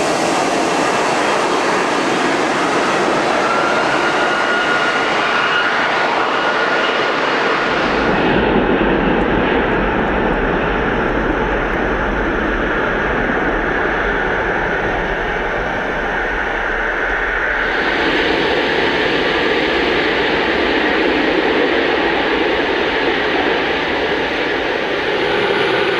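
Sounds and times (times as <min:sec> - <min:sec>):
faint high engine whine: 0:00.0 - 0:25.9
jet engines rushing: 0:00.0 - 0:25.9.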